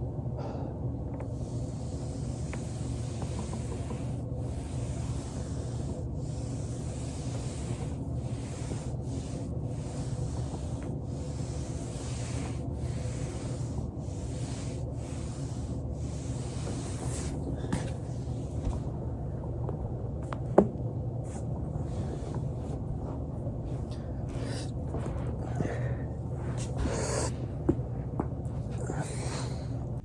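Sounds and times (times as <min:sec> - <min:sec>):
foam roller rubbing under a body: 0:01.2 - 0:19.3, 0:21.3 - 0:25.6.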